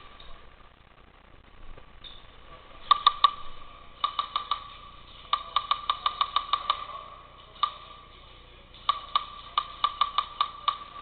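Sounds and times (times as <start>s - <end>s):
airsoft guns firing: 2.8s - 4.7s.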